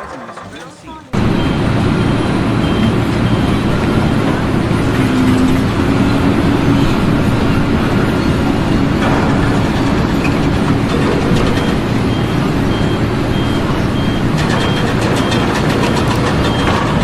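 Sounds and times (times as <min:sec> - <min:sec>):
heavy vehicle low rumble: 0:00.0 - 0:17.0.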